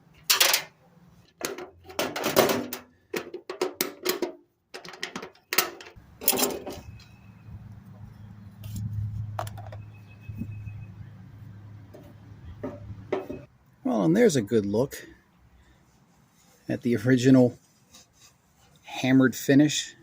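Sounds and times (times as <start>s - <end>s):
metal toolbox handles clinking: 0.3s - 0.8s, 1.4s - 7.0s.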